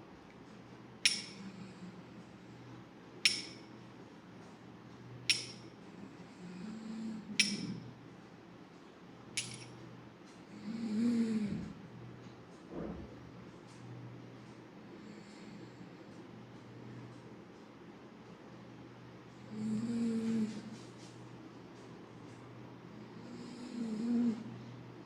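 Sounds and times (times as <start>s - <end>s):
sharp ringing clinks: 1.1s - 1.5s, 3.3s - 3.7s, 5.3s - 5.7s, 7.4s - 7.8s, 9.4s - 9.8s.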